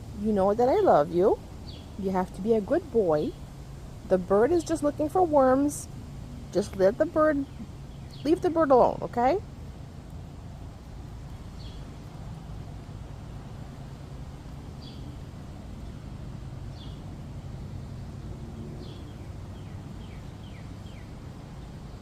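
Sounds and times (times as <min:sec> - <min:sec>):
steady low hum: 0:00.0 - 0:22.0
small bird chirping: 0:00.8 - 0:02.6, 0:06.5 - 0:09.1, 0:11.3 - 0:12.4, 0:14.5 - 0:17.3, 0:18.2 - 0:22.0.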